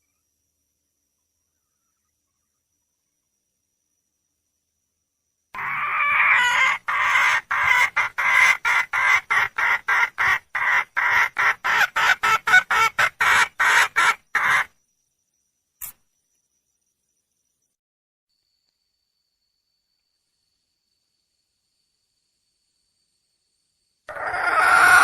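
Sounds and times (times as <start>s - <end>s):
junglefowl hen clucking: 5.6s - 14.7s, 24.1s - 25.0s.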